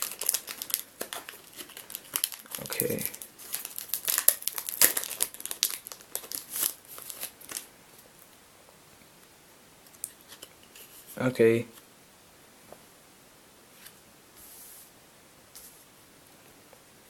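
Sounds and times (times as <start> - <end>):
foil wrapper crinkling and tearing: 0.0 - 7.7.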